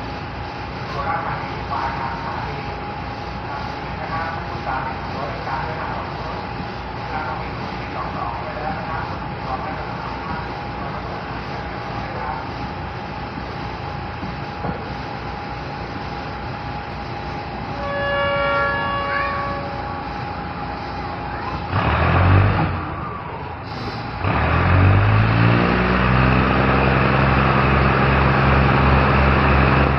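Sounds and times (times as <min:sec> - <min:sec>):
diesel train running: 0:00.0 - 0:29.9
brief tone: 0:17.7 - 0:20.0
loud rush of noise: 0:18.8 - 0:29.9
diesel engine revving: 0:21.0 - 0:29.9.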